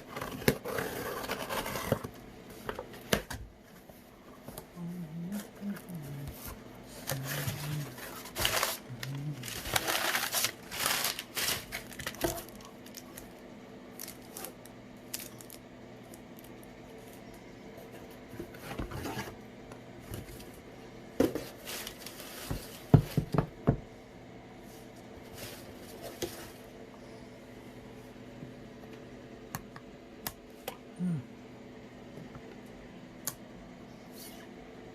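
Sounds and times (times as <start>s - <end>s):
faint steady hum: 0.0s - 34.9s
plastic wrap crinkling and tearing: 7.1s - 16.7s.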